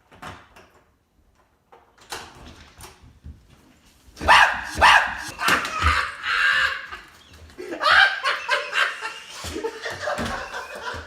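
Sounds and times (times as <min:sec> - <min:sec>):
person laughing: 0:04.2 - 0:11.0.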